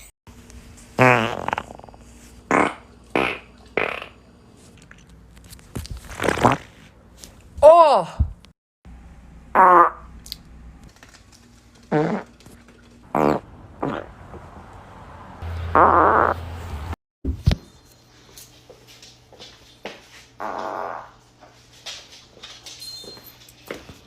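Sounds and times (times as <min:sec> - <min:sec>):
short buzzing farts: 0:01.0 - 0:04.2, 0:06.1 - 0:06.8, 0:09.5 - 0:10.2, 0:11.9 - 0:12.5, 0:13.1 - 0:14.1, 0:15.7 - 0:16.4, 0:20.4 - 0:21.2.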